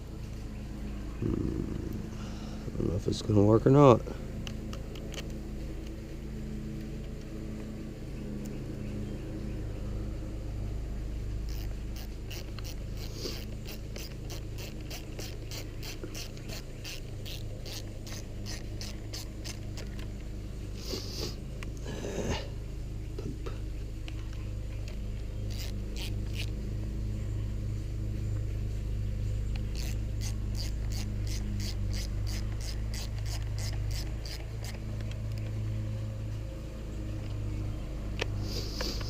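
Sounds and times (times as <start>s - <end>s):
steady low hum: 0.0s - 39.0s
ratchet wrench clicking: 11.5s - 20.0s, 25.5s - 26.5s, 29.6s - 35.5s.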